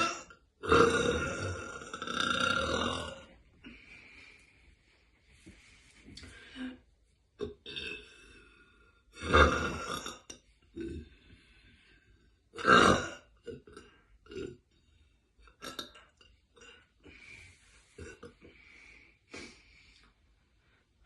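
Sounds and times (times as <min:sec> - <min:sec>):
woman burping loudly: 0:00.0 - 0:03.4, 0:09.2 - 0:11.1, 0:12.6 - 0:14.6, 0:15.5 - 0:16.7.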